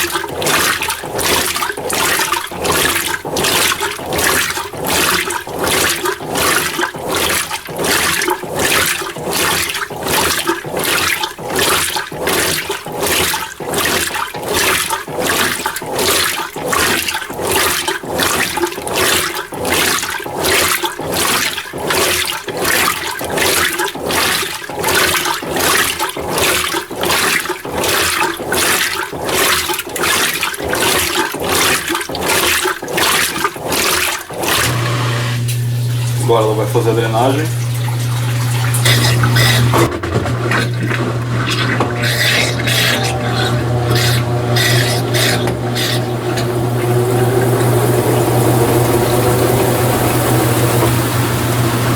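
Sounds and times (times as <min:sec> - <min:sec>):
washing machine water sloshing: 0:00.0 - 0:51.9
low motor hum: 0:34.6 - 0:51.9.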